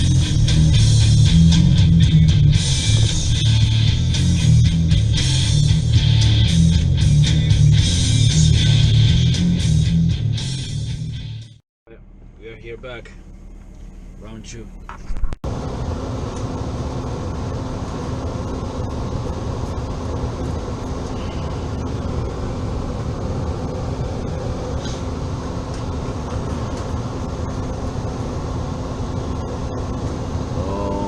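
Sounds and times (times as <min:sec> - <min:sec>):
fan whir: 0:11.9 - 0:31.0
low electrical hum: 0:11.9 - 0:31.0.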